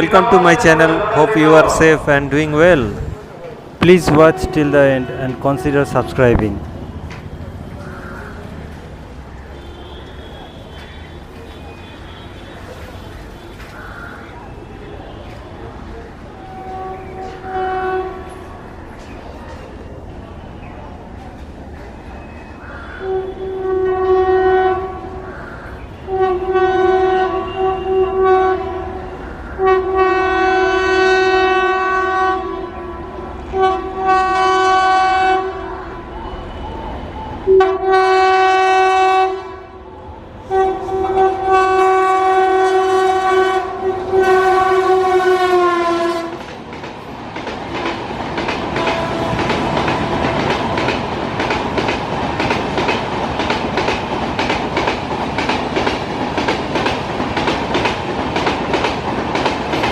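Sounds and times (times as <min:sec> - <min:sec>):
locomotive horn blasts: 0:03.9 - 0:07.2, 0:09.5 - 0:13.6, 0:16.4 - 0:18.4, 0:22.9 - 0:25.2, 0:26.0 - 0:36.8, 0:37.4 - 0:39.8, 0:40.4 - 0:46.4, 0:48.8 - 0:50.8
train wheels clattering: 0:45.6 - 0:59.9.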